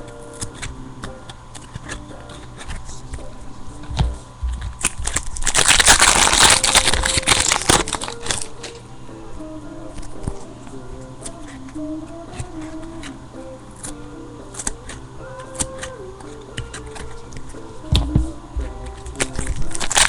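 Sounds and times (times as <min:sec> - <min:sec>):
soft background music: 0:00.0 - 0:04.6, 0:05.6 - 0:20.0
cards clicking and flicking: 0:00.0 - 0:08.9, 0:09.9 - 0:13.2, 0:13.8 - 0:20.0
wrapper crinkling: 0:04.5 - 0:08.8, 0:18.6 - 0:20.0.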